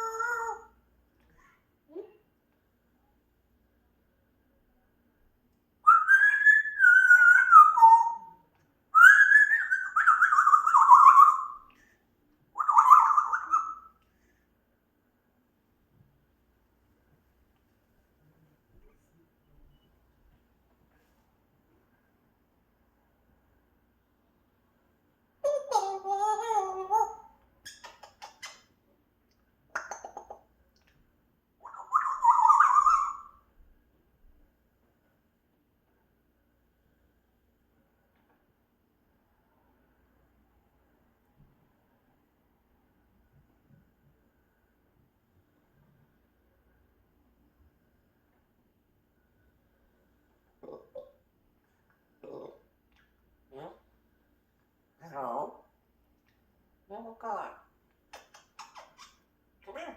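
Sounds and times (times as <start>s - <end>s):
parrot whistling: 5.8s - 8.4s, 9.0s - 11.6s, 12.6s - 14.0s, 31.6s - 33.4s.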